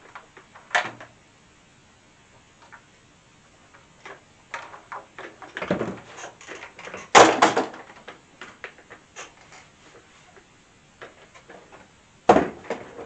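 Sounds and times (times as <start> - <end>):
hard objects knocking and clattering: 4.0 - 9.7.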